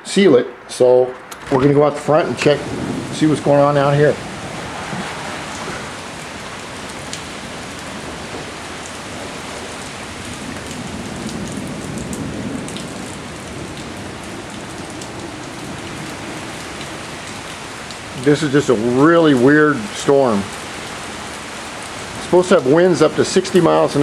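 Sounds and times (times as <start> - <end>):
strong storm wind rushing: 1.2 - 17.4.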